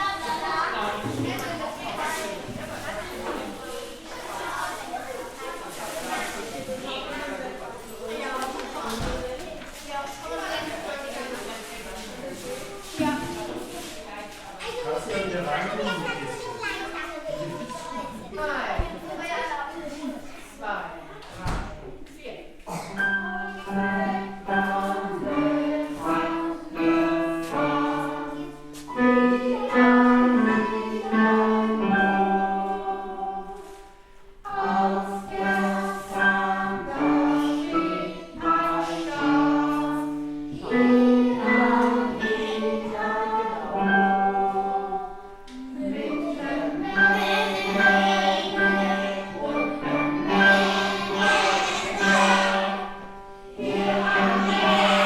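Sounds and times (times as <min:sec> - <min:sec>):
choir singing: 0:22.7 - 0:55.0
instrumental accompaniment: 0:23.0 - 0:55.0.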